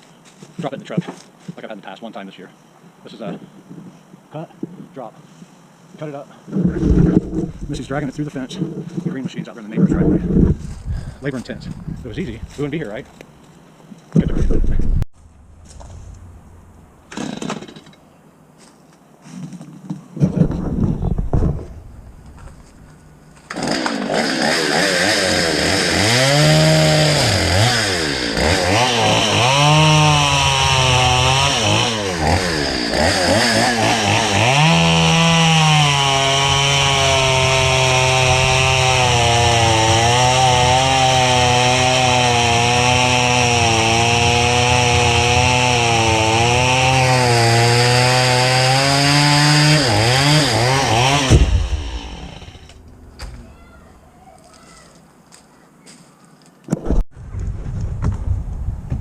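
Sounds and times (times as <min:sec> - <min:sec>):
chainsaw revving and cutting wood: 0:06.6 - 0:08.2, 0:23.4 - 0:52.8.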